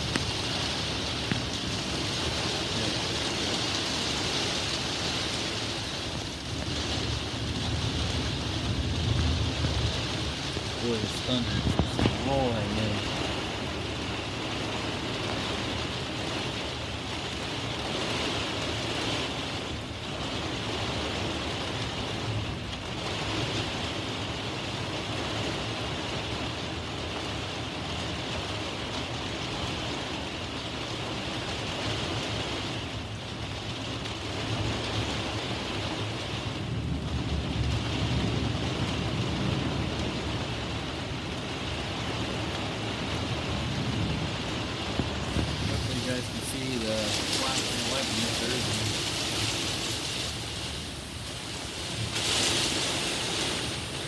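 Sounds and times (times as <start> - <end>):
low rolling thunder: 0.0 - 14.0, 34.4 - 54.0
steady rain: 0.0 - 54.0.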